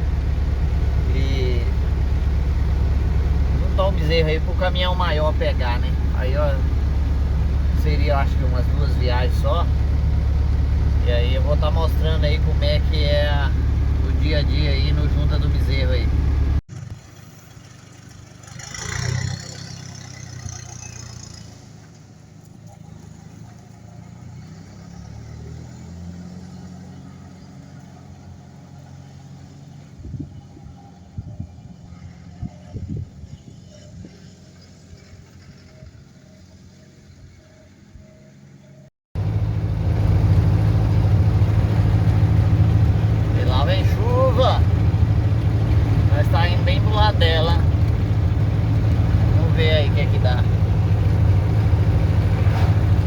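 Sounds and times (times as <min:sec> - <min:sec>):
road noise: 0:00.0 - 0:53.0
vehicle engine humming: 0:00.0 - 0:53.0.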